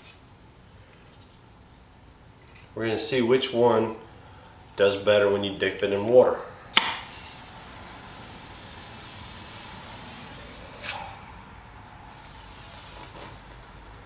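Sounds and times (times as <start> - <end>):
match burning with a hiss: 6.6 - 14.0
match flaring up: 6.7 - 13.9.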